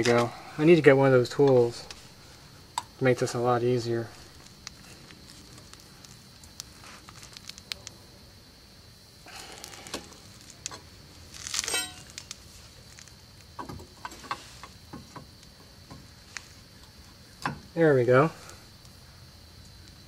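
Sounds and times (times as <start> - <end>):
crowbar scraping metal: 11.4 - 12.2.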